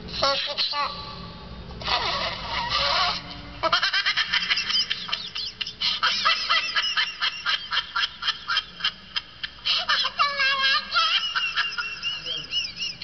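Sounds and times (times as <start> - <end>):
high-pitched laughter: 1.8 - 13.0.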